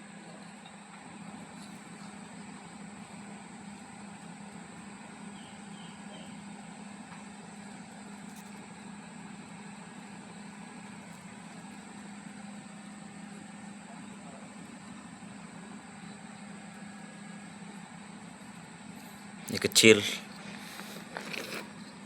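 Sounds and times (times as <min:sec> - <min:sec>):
machine humming with high whine: 0:00.0 - 0:22.0.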